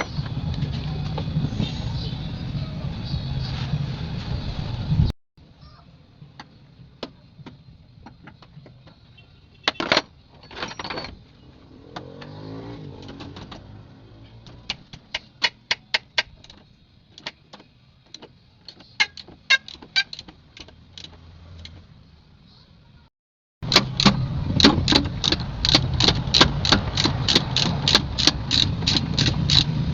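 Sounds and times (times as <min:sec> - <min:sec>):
metallic clicks of hand tools: 0:23.7 - 0:29.8.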